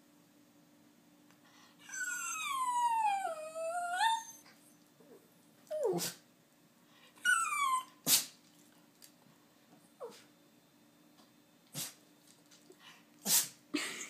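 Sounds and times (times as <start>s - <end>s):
dog whining: 1.8s - 6.2s, 7.2s - 8.3s
dog sneezing: 5.9s - 6.2s, 8.0s - 8.4s, 11.7s - 12.0s, 13.2s - 13.6s.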